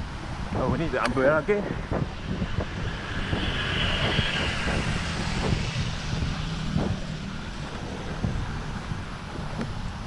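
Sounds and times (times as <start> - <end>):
vehicle passing on wet road: 1.7 - 9.5.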